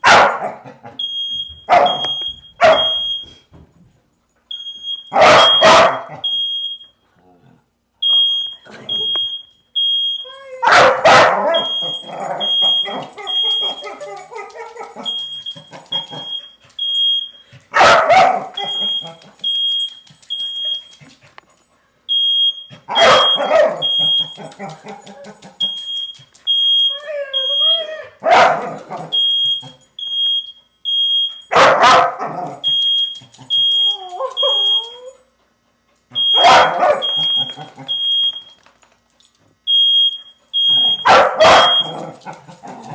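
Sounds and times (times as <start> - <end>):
dog barking: 0.0 - 0.6, 1.7 - 3.0, 5.1 - 6.2, 10.6 - 14.1, 17.7 - 18.8, 22.9 - 24.0, 28.2 - 29.1, 31.5 - 32.6, 36.4 - 37.2, 40.8 - 42.2
smoke alarm beeping: 1.0 - 3.6, 4.5 - 7.0, 8.0 - 35.3, 36.1 - 42.2
dog wavering cries: 10.3 - 15.2, 26.8 - 29.2, 33.5 - 35.2.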